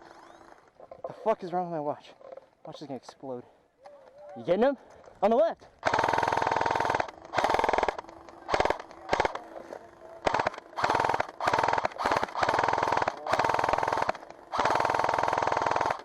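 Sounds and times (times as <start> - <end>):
airsoft gun firing full-auto bursts: 5.8 - 9.5, 10.2 - 16.0.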